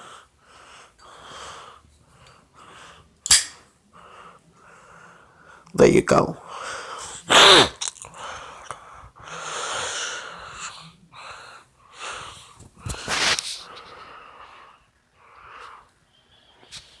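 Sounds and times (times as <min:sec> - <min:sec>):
breathy hissing puffs: 0:06.5 - 0:15.9.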